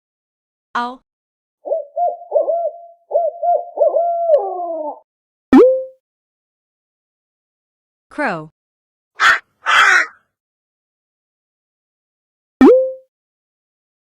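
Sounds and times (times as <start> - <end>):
owl hooting: 1.6 - 5.0, 9.2 - 10.2.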